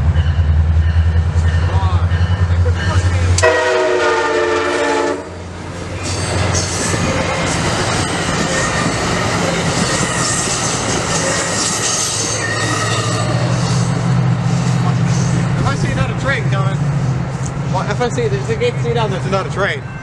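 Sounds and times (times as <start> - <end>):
train rushing past on rails: 0.0 - 20.0
train horn chord: 3.3 - 5.4
high wheel noise: 5.4 - 19.6.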